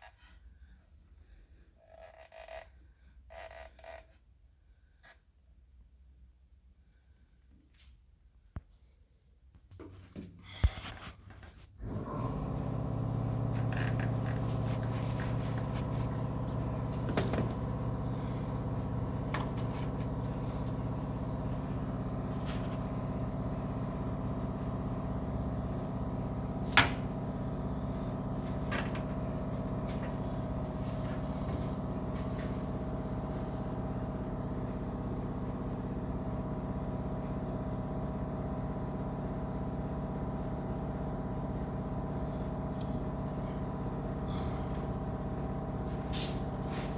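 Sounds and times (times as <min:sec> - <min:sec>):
steady machine hum: 0:11.8 - 0:46.9.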